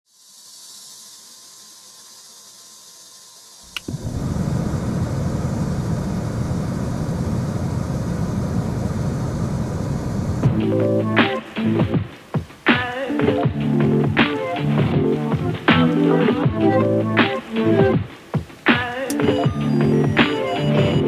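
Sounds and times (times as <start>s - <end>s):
faint hiss: 0.1s - 21.0s
click: 3.7s - 10.6s
low machine rumble: 3.7s - 10.8s.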